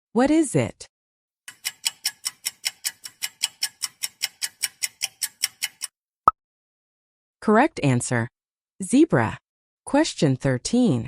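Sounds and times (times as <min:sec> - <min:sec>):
fast clock-like ticking: 0:01.5 - 0:06.0.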